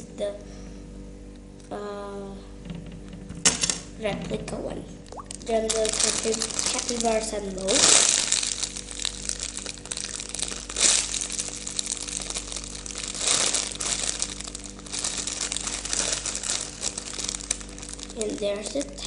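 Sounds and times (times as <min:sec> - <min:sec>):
plastic toy crinkling: 0:05.4 - 0:19.0.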